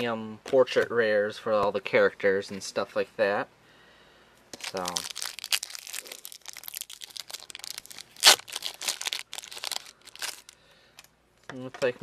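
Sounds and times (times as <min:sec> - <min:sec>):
plastic wrapper crinkling and tearing: 0:04.5 - 0:10.6.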